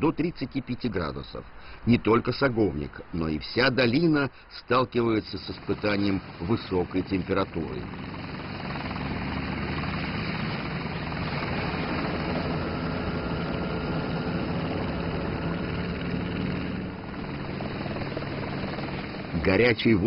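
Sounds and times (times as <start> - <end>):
helicopter flying overhead: 5.1 - 20.0.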